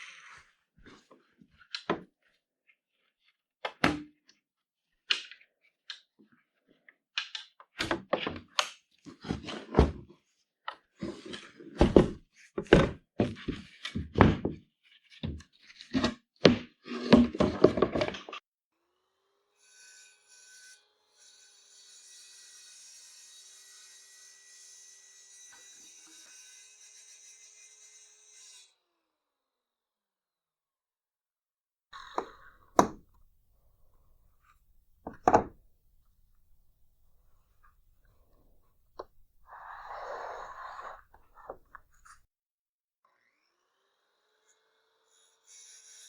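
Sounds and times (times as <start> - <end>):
tools and wood knocking on workbench: 11.8 - 14.6, 32.0 - 39.5.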